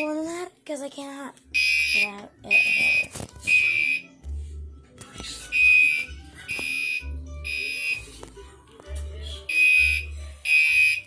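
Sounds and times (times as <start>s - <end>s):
fire alarm horn beeps: 6.7s - 8.0s, 9.5s - 11.0s.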